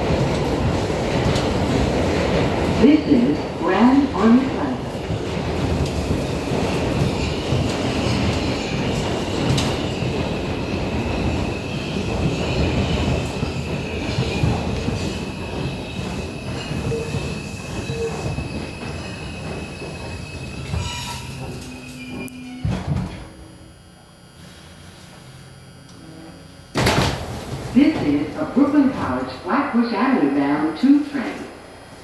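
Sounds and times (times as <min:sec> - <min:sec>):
train clunk: 0:00.0 - 0:23.6
train wheels rumbling on rail: 0:00.0 - 0:23.6
high brake squeal: 0:20.6 - 0:22.7.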